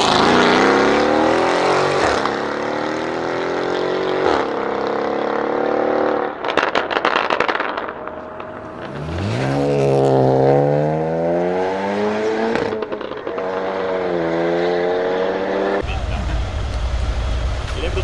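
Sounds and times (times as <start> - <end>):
exhaust crackles and pops: 6.2 - 9.8, 12.5 - 13.6, 15.8 - 18.0
car exhaust note: 15.8 - 18.0.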